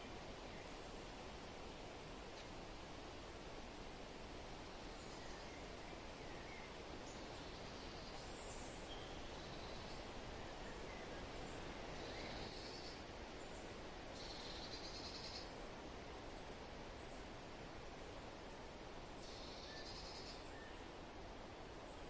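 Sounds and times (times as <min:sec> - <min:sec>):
steady wind: 0:00.0 - 0:22.0
faint high bird calls: 0:12.0 - 0:13.0, 0:14.2 - 0:15.6, 0:19.2 - 0:20.9.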